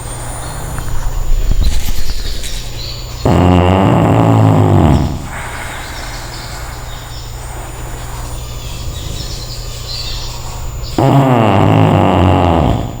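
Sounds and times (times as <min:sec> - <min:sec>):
faint bird chirps: 0:00.0 - 0:03.6, 0:04.7 - 0:11.7
dog snoring: 0:03.2 - 0:06.6, 0:10.9 - 0:13.0.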